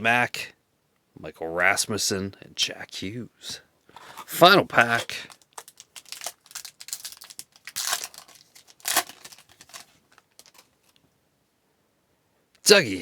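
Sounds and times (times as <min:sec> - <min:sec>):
foil wrapper crinkling: 0:04.0 - 0:11.0
foil wrapper ripping: 0:04.1 - 0:11.0.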